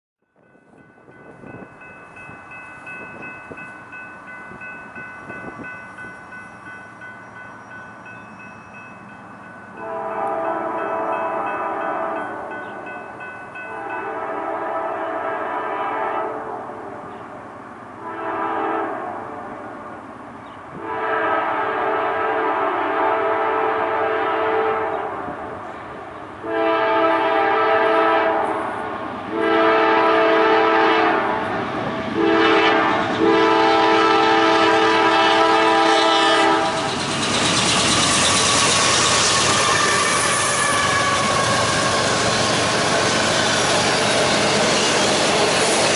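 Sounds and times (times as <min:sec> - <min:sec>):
train engine and wheel noise: 0:00.2 - 0:45.9
locomotive air horn blasts: 0:09.8 - 0:12.8, 0:13.6 - 0:17.0, 0:18.0 - 0:19.6, 0:20.8 - 0:25.4, 0:26.4 - 0:31.4, 0:32.2 - 0:36.9, 0:39.5 - 0:42.2.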